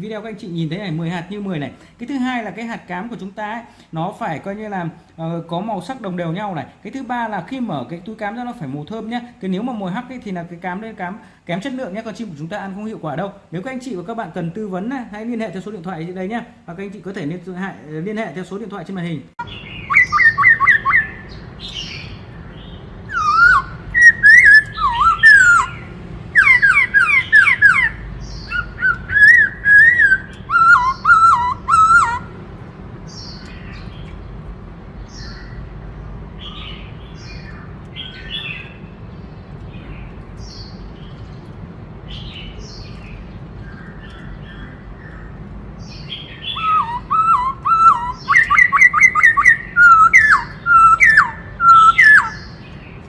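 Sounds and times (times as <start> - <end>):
bird singing whistled phrases: 19.4 - 22.2, 23.1 - 32.3, 46.1 - 52.6.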